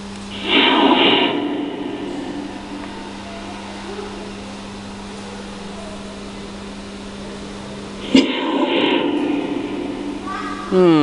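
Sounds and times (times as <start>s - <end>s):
steady low hum: 0.0s - 11.0s
rough noise: 0.3s - 4.6s, 8.0s - 10.7s.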